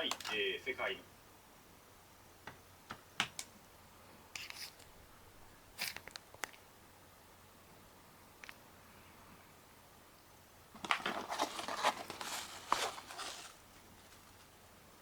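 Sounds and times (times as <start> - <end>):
short rustle: 11.1 - 14.5.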